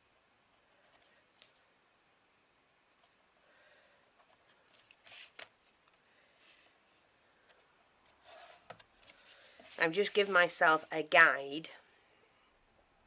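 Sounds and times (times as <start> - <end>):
faint scratches and rustles: 0.5 - 1.7, 4.1 - 11.0.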